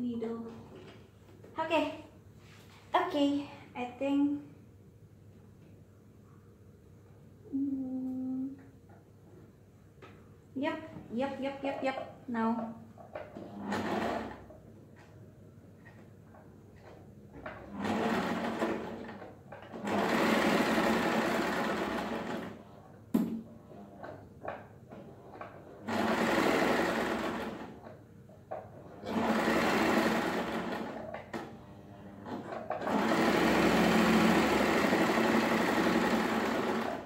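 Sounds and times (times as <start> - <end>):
electric sewing machine stitching: 13.2 - 14.5, 16.8 - 22.6, 25.4 - 27.9, 28.9 - 37.0.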